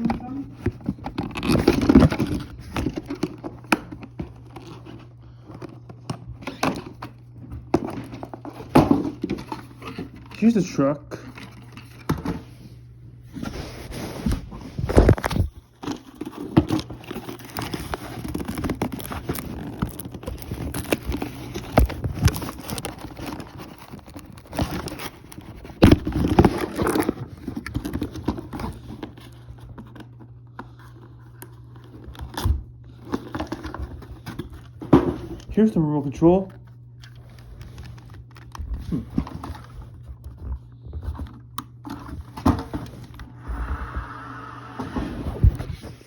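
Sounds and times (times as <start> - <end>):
crinkling plastic packaging: 14.8 - 34.8.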